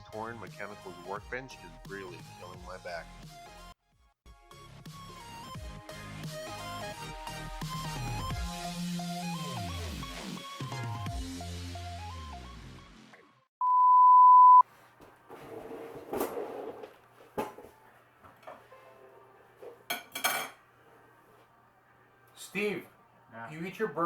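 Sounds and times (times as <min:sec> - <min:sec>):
loud steady beep: 0:13.6 - 0:14.6
dishes and cutlery clinking: 0:16.1 - 0:21.0.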